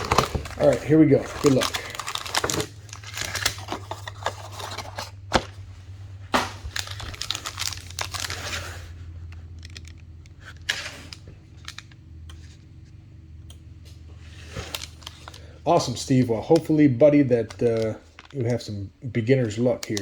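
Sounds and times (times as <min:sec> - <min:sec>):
card pack wrapper tearing and crinkling: 0:00.0 - 0:05.5, 0:06.4 - 0:11.8, 0:14.5 - 0:16.8, 0:19.5 - 0:20.0
steady low hum: 0:00.0 - 0:20.0.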